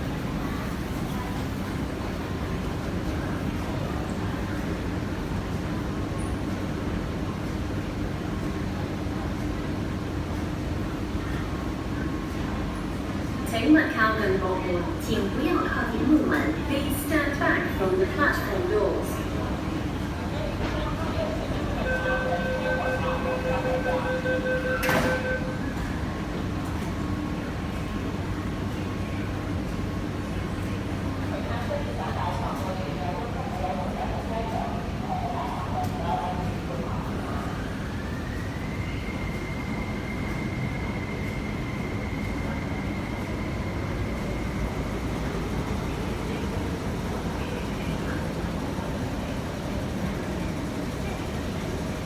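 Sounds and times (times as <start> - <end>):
low rumble of standing train: 0.0 - 52.0
two-tone warning beep: 21.8 - 25.6
train doors shutting knock: 21.9 - 25.6.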